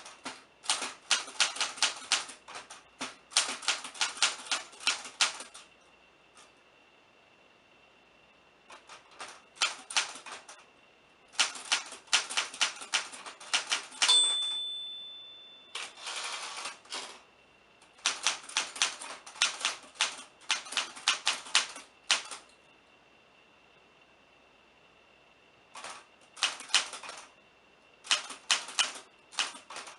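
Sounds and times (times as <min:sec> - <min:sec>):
typewriter keys clicking: 0:00.0 - 0:05.7, 0:08.7 - 0:10.6, 0:11.4 - 0:14.2, 0:18.0 - 0:22.4, 0:25.8 - 0:27.2, 0:28.1 - 0:29.9
typewriter bell ringing: 0:14.0 - 0:16.7
typewriter carriage sliding: 0:15.8 - 0:17.2.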